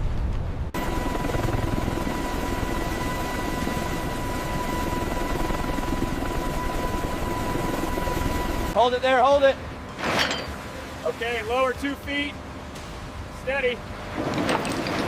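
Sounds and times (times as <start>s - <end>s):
high machine whine: 0.8s - 15.0s
machine rumble and rushing: 12.5s - 15.0s.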